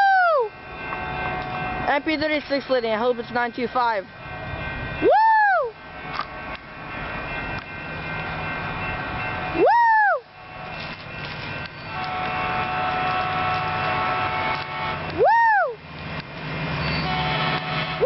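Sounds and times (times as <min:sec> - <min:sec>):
rail noise: 0:00.0 - 0:18.0
train engine rumble: 0:00.0 - 0:18.0
steady ringing tones: 0:00.4 - 0:13.0
rising and falling whoops: 0:05.1 - 0:05.8, 0:09.6 - 0:10.3, 0:15.2 - 0:15.8.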